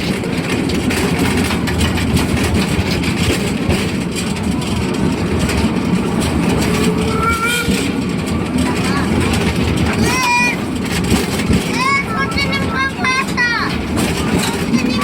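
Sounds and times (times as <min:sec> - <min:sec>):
train running rumble: 0:00.0 - 0:15.0.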